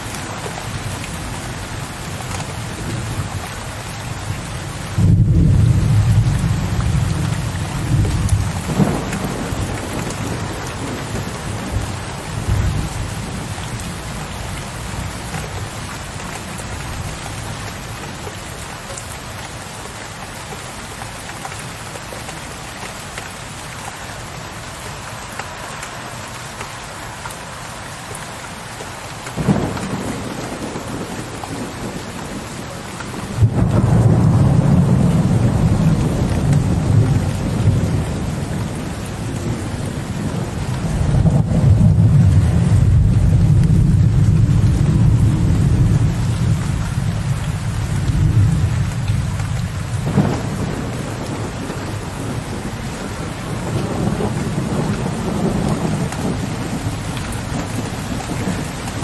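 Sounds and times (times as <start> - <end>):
steady rain: 0.0 - 59.0
thunder rumbling: 4.3 - 13.6, 29.3 - 59.0.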